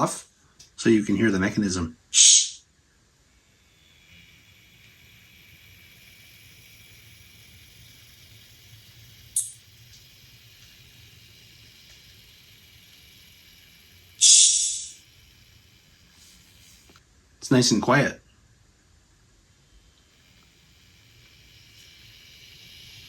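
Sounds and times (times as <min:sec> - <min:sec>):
model locomotive motor whirring: 0:00.6 - 0:23.0
short hiss: 0:02.2 - 0:02.6, 0:14.2 - 0:15.0.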